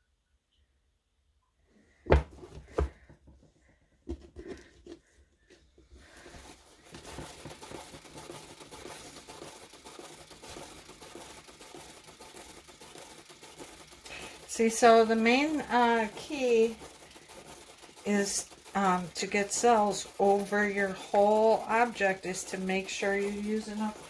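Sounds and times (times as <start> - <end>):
paint spinner whirring: 5.6 - 24.0.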